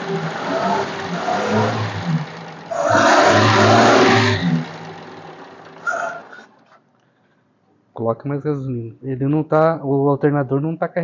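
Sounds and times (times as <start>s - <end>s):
engine running unevenly: 0.0s - 6.8s.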